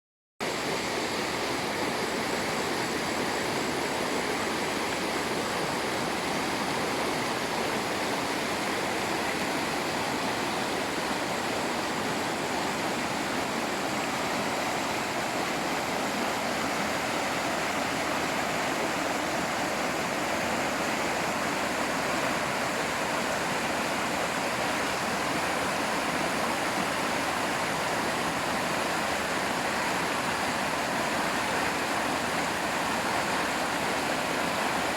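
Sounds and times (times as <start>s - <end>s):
waterfall rushing and splashing: 0.4s - 34.9s.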